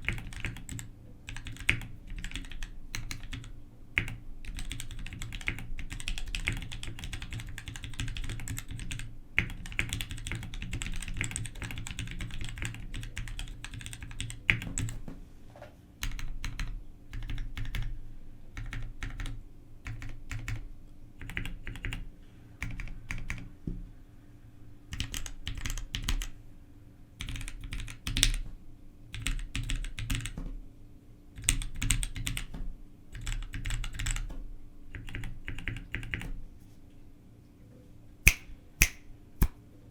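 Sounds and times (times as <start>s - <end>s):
mechanical keyboard typing: 0.0s - 15.0s, 16.0s - 17.9s, 18.6s - 20.6s, 21.2s - 22.0s, 24.9s - 26.3s, 27.2s - 28.4s, 29.2s - 30.4s, 31.4s - 32.5s, 33.2s - 34.3s, 35.0s - 36.2s.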